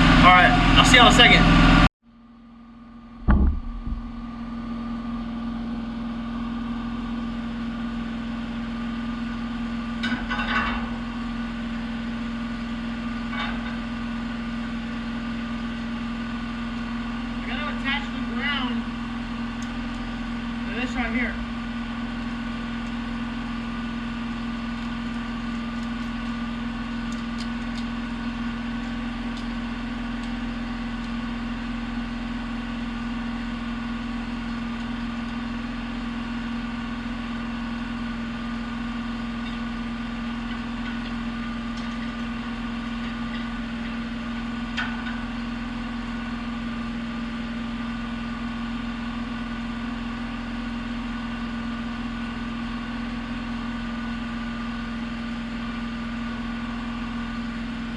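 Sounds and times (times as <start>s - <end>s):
steady machine hum: 2.8s - 5.6s.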